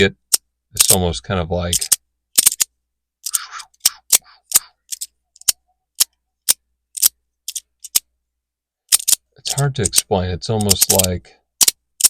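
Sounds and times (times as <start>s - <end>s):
magnetic plates clicking: 8.9s - 12.0s.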